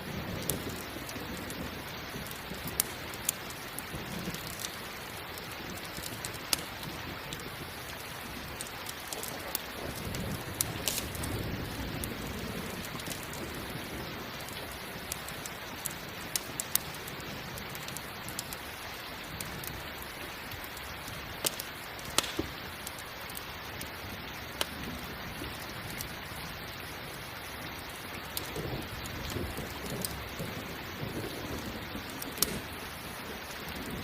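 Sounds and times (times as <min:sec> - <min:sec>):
low thunder rumble: 0:00.0 - 0:18.1, 0:28.3 - 0:34.0
campfire crackling pops: 0:00.0 - 0:34.0
steady rain: 0:00.0 - 0:34.0.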